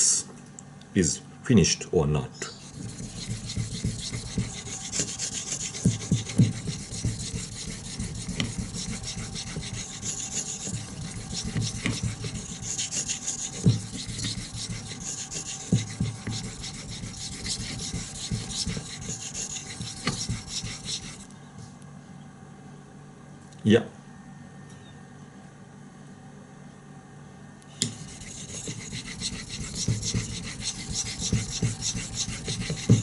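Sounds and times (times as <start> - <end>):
knife scraping on whetstone: 2.5 - 21.3, 27.8 - 33.0.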